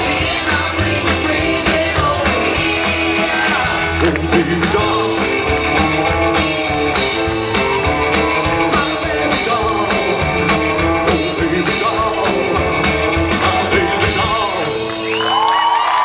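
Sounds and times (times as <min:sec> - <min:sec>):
steady drum beat: 0:00.0 - 0:15.2
live rock band playing: 0:00.0 - 0:16.0.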